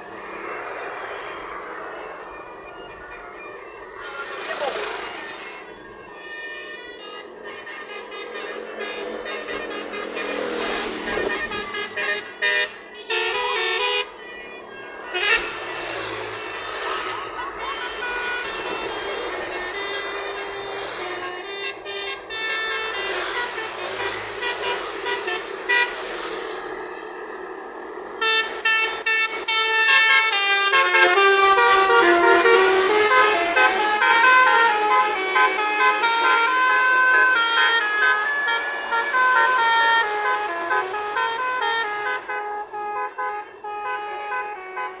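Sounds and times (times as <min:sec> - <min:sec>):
steady horn blare: 0:03.1 - 0:05.8, 0:06.7 - 0:27.0, 0:28.2 - 0:45.0
bus horn playing stepped notes: 0:07.5 - 0:14.2, 0:28.2 - 0:45.0.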